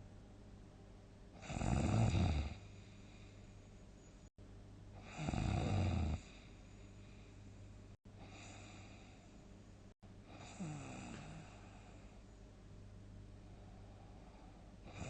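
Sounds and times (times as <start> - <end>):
person snoring: 1.4 - 2.8, 5.0 - 6.5, 10.4 - 12.0
faint breath: 2.6 - 4.3, 6.2 - 12.4, 13.4 - 15.0.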